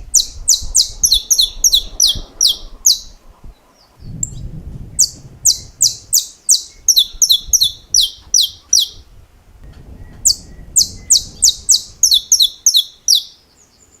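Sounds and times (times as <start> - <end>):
finch singing sharp high notes: 0.2 - 3.2, 5.0 - 9.0, 10.3 - 13.4.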